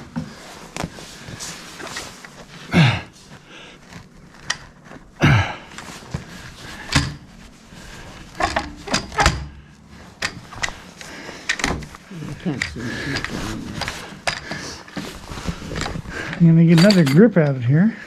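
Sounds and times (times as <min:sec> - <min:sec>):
metal couplers clicking and clanking: 0:15.8 - 0:17.6.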